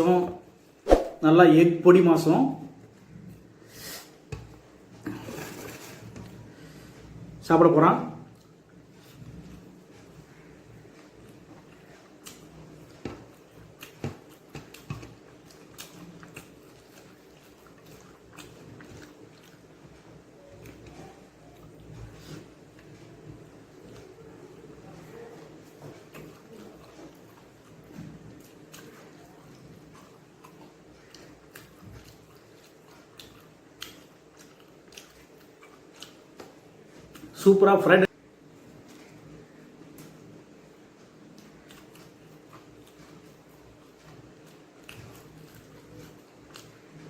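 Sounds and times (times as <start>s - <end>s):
person chewing food: 8.3s - 37.3s, 40.9s - 47.0s.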